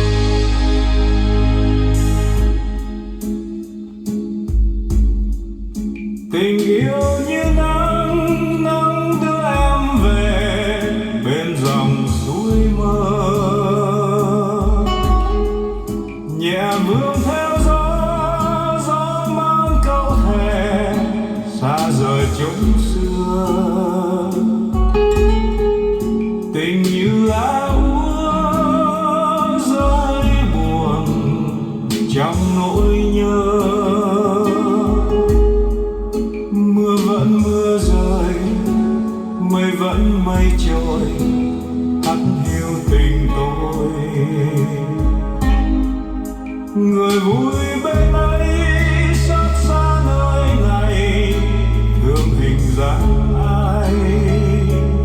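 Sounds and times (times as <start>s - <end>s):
deep sustained bass notes: 0.0s - 3.4s, 48.0s - 55.0s
ballad over loudspeakers: 0.0s - 55.0s
guitar: 0.0s - 55.0s
person singing with vibrato: 0.0s - 55.0s.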